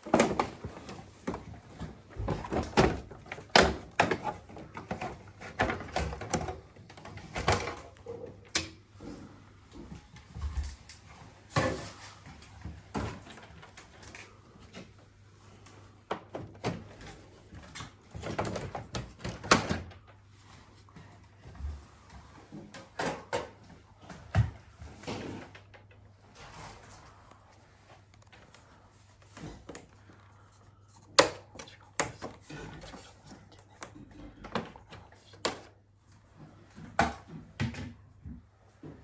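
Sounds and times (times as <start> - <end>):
plastic parts clicking and knocking: 0.0 - 8.8.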